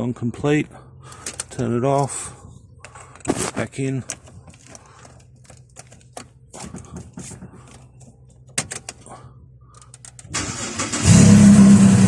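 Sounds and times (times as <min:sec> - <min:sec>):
light handling clicks and knocks: 0:00.6 - 0:02.2, 0:02.8 - 0:10.3.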